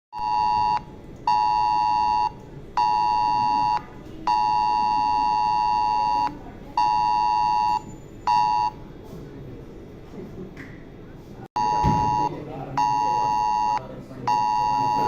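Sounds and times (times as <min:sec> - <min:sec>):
two-tone electronic alarm: 0:00.2 - 0:08.8, 0:11.6 - 0:15.0.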